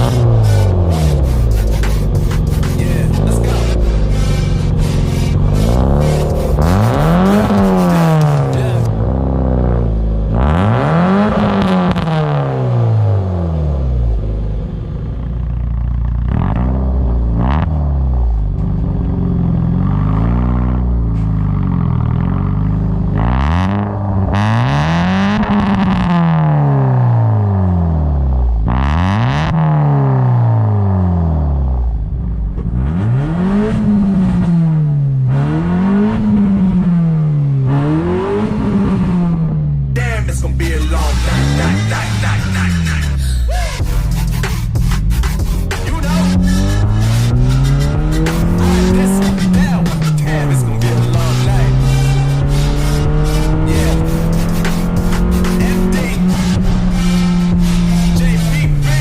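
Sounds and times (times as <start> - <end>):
exhaust pops and crackles: 0.0 - 9.0, 43.8 - 59.0
car engine revving: 0.0 - 59.0.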